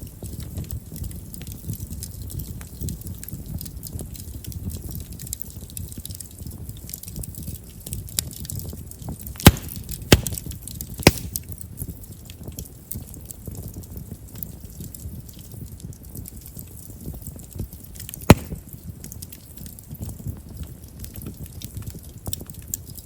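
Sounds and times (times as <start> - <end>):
fire flames rumbling: 0.0 - 23.0
firewood crackling: 0.0 - 23.0
sharp wood pops: 9.4 - 11.5, 18.3 - 18.7.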